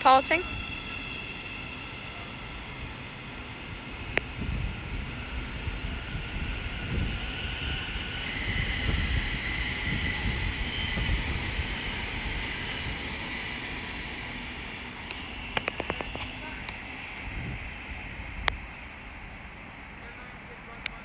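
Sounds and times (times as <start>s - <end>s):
electric train traction whine: 0.0s - 21.0s
wind rumble on microphone: 3.7s - 13.1s, 15.1s - 18.7s.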